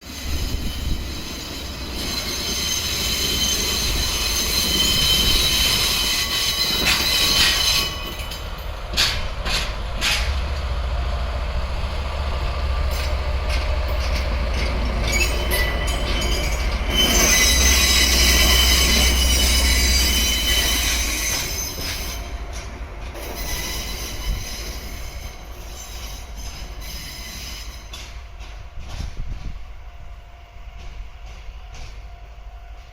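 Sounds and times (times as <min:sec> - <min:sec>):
train wheels squealing on rails: 0:00.0 - 0:32.9
locomotive engine drone: 0:07.3 - 0:21.6.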